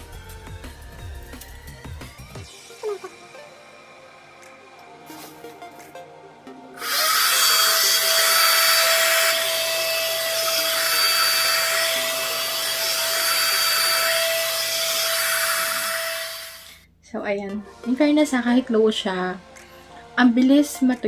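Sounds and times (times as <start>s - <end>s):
hair dryer switch: 6.8s - 16.7s
hair dryer blowing: 6.8s - 16.8s.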